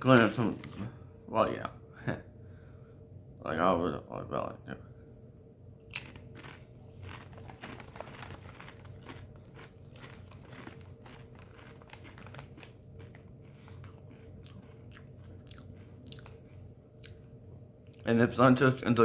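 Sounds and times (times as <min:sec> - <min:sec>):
low hum: 0:00.0 - 0:19.0
chewing crisp chips: 0:05.9 - 0:18.1.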